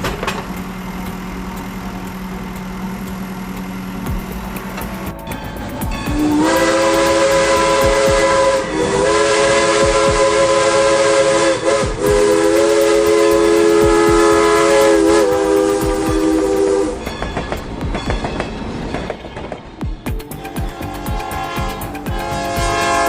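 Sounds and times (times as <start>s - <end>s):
wheels clacking on rail joints: 0.0s - 23.0s
steam train chime whistle: 0.6s - 18.8s, 20.0s - 23.0s
hiss of steam: 6.1s - 17.0s.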